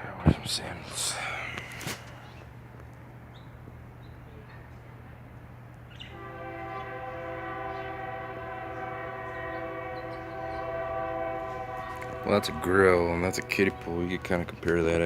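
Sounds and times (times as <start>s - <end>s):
low steady hum: 0.0s - 15.0s
horn chord: 6.1s - 14.6s.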